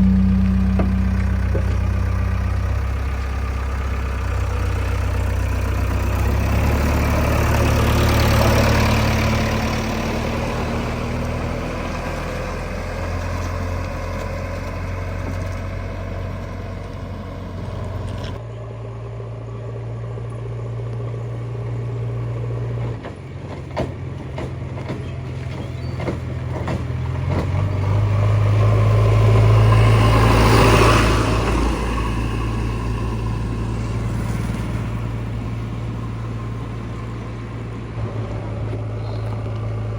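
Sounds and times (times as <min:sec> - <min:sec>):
heavy diesel engines running: 0:00.0 - 0:39.9
short knocks and clatters: 0:22.8 - 0:28.0.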